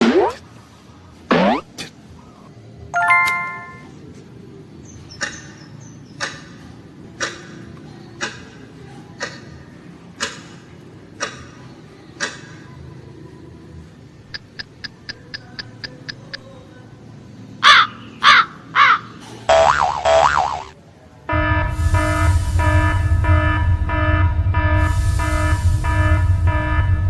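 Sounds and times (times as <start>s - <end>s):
ding-dong chime: 3.0s - 3.9s.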